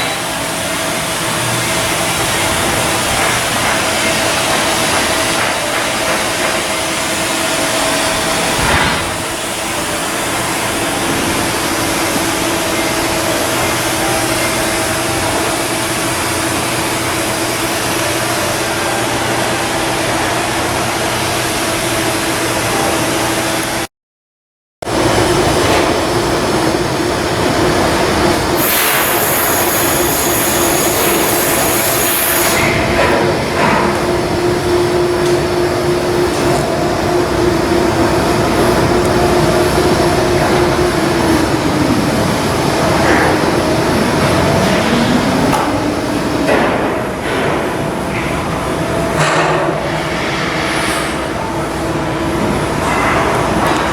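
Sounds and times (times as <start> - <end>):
machinery hum: 0.0 - 23.9, 24.8 - 53.9
high hiss: 28.6 - 32.7.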